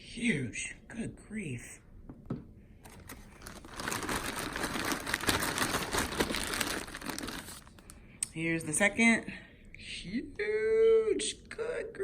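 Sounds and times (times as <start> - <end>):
plastic bag crinkling: 2.8 - 8.1.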